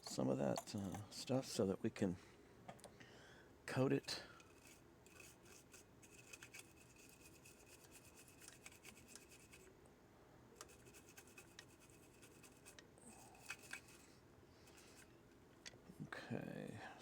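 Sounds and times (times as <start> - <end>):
brush scrubbing circuit board: 4.5 - 9.7, 10.6 - 12.8.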